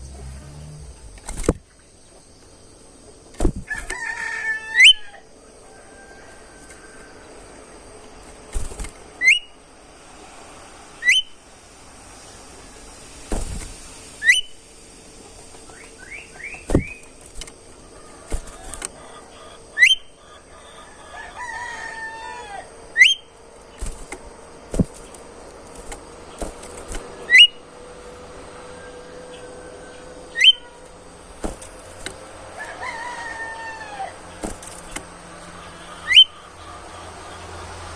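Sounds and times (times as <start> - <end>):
low falling whistles: 3.8 - 8.0, 9.0 - 17.2, 17.8 - 24.7, 27.2 - 31.7, 35.2 - 37.9
bird whistled song with whip note: 4.8 - 5.0, 9.2 - 9.5, 11.0 - 11.4, 14.2 - 14.6, 19.8 - 20.1, 23.0 - 23.9, 27.2 - 27.6, 30.3 - 30.7, 36.1 - 36.4.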